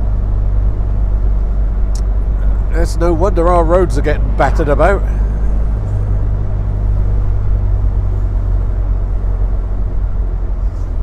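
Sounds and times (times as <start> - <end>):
car engine running: 0.0 - 11.0
road and wind rumble: 0.0 - 11.0.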